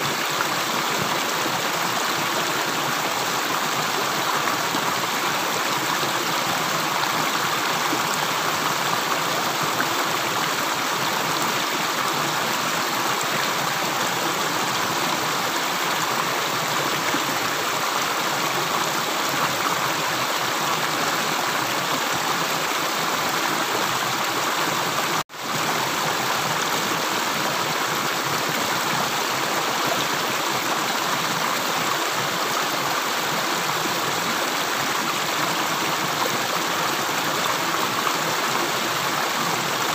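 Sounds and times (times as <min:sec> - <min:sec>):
running water rushing: 0:00.0 - 0:39.9.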